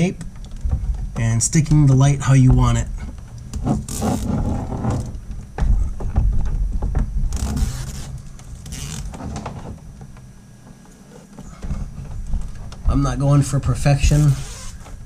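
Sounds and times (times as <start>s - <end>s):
knocks and rustling: 0.0s - 15.0s
tape backing tearing: 7.4s - 9.3s.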